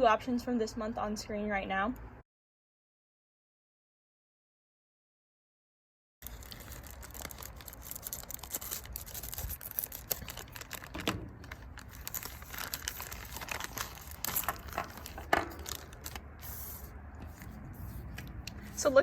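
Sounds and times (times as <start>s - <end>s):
packaging crinkling and rustling: 6.2s - 19.0s.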